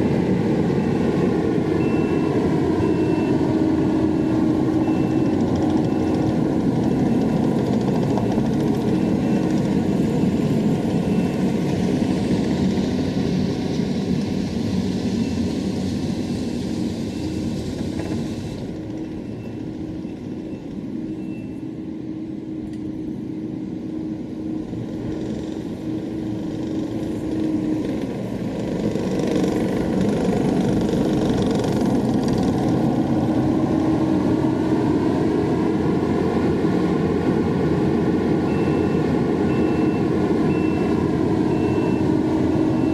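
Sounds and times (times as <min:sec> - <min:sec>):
heavy machine engine under load: 0:00.0 - 0:42.9
reversing alarm beeping: 0:01.8 - 0:11.6, 0:17.1 - 0:17.5, 0:19.2 - 0:21.7, 0:38.5 - 0:42.9.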